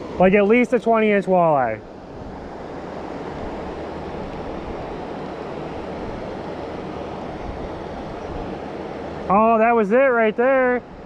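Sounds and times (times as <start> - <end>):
river water flowing: 0.0 - 11.0
wind on microphone: 1.8 - 9.3.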